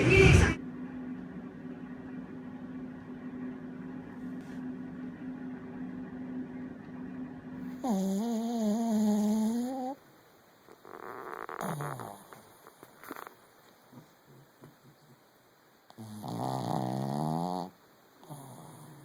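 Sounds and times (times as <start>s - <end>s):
steady low hum: 0.0s - 19.0s
dog whining: 7.7s - 10.0s, 10.7s - 15.1s, 15.9s - 19.0s.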